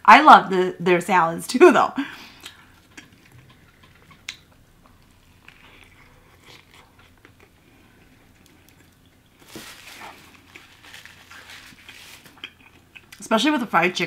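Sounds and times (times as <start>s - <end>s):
person chewing food: 2.3s - 13.2s.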